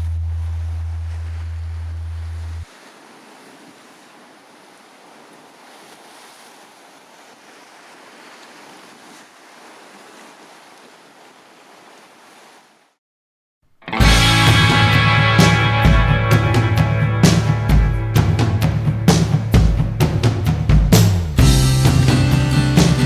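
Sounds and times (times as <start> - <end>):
loud low hum: 0.0 - 2.7, 14.0 - 23.0
sea surf: 0.0 - 12.9, 13.8 - 23.0
wind: 0.0 - 13.0, 14.3 - 23.0.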